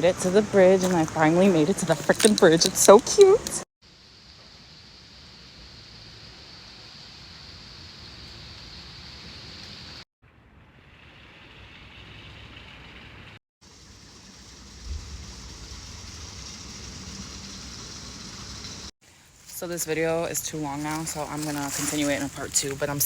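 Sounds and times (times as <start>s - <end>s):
creek water running: 0.0s - 3.6s, 11.6s - 23.0s.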